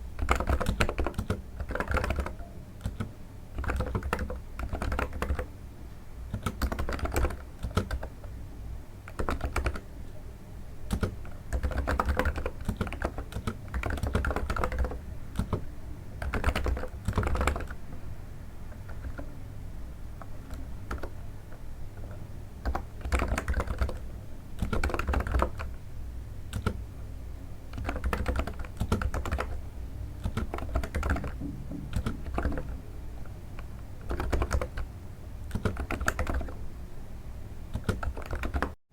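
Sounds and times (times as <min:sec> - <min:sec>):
soft keyboard keystrokes: 0:00.2 - 0:05.5, 0:06.3 - 0:08.4, 0:09.1 - 0:09.8, 0:10.9 - 0:17.8, 0:18.7 - 0:19.3, 0:20.2 - 0:24.0, 0:24.6 - 0:25.8, 0:26.5 - 0:26.8, 0:27.7 - 0:29.6, 0:30.2 - 0:36.6, 0:37.7 - 0:38.8.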